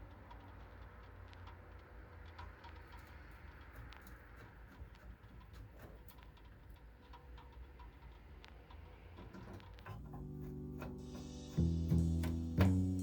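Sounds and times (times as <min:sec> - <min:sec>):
faint clicks and taps: 0:00.0 - 0:13.0
background music with held chords: 0:10.0 - 0:13.0.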